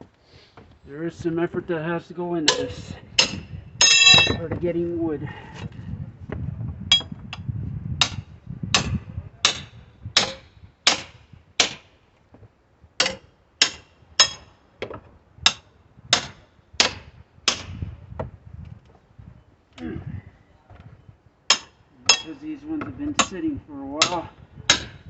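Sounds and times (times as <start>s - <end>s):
sledgehammer striking wood: 8.8s - 11.9s, 13.0s - 17.8s, 21.5s - 22.2s, 24.0s - 25.0s.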